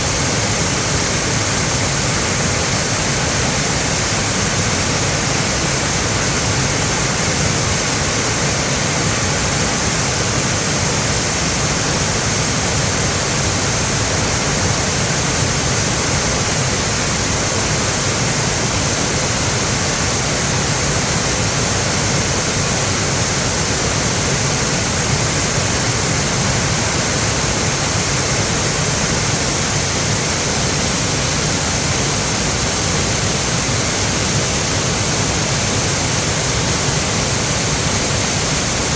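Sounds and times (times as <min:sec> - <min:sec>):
stream rushing: 0:00.0 - 0:38.9.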